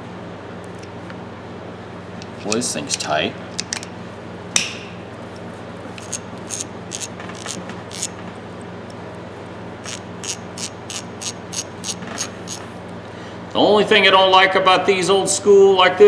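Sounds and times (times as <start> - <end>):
ratchet clicking: 5.9 - 8.2, 9.8 - 12.7.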